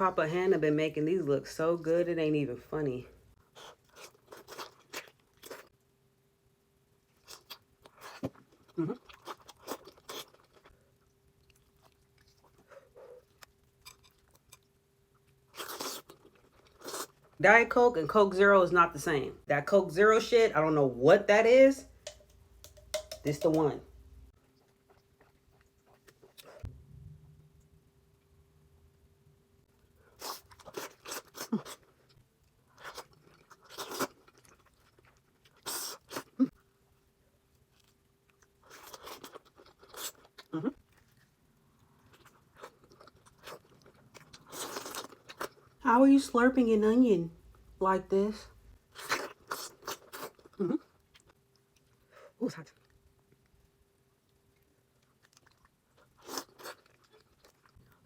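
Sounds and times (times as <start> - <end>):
soft chewing: 3.3 - 5.9, 7.0 - 17.4, 24.3 - 26.7, 29.7 - 45.8, 48.7 - 58.0.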